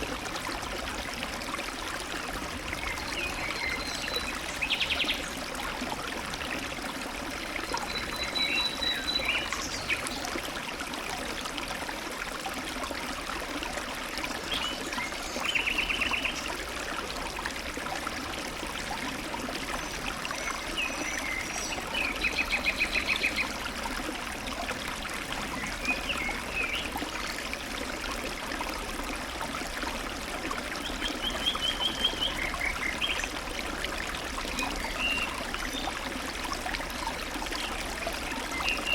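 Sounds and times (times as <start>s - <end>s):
stream babbling over rocks: 0.0s - 38.9s
songbirds singing: 2.8s - 5.3s, 7.6s - 10.3s, 19.7s - 23.6s, 25.4s - 27.5s, 30.8s - 33.4s, 34.6s - 36.0s, 37.0s - 38.9s.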